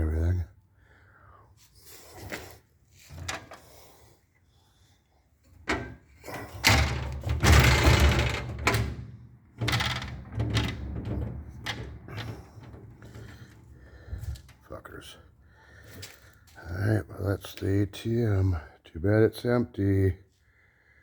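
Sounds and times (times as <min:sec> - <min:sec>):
metal clunks and knocks: 0:05.6 - 0:14.7
metal drawer scraping slide: 0:05.7 - 0:14.6.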